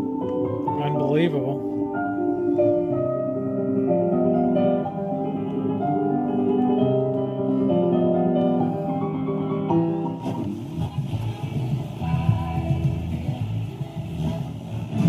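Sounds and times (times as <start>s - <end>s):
instrumental music from radio: 8.7s - 15.0s.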